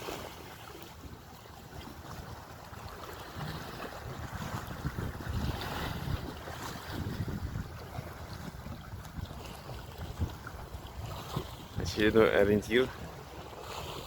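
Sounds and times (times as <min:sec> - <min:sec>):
sea waves on shore: 0:00.0 - 0:14.0
wind buffeting microphone: 0:02.8 - 0:14.0.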